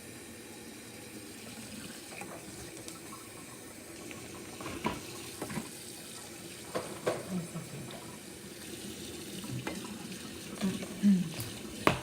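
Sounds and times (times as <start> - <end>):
tap running into sink: 4.1 - 5.7, 6.6 - 8.2, 9.4 - 12.0.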